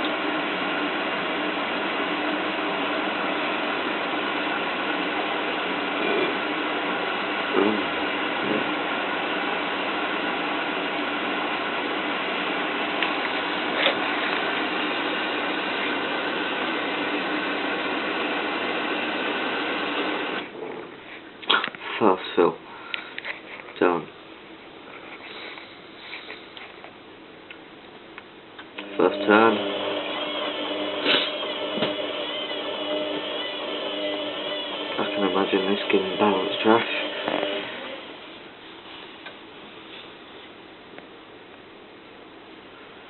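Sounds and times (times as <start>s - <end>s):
washing machine filling with water: 8.0s - 20.4s, 28.8s - 38.3s.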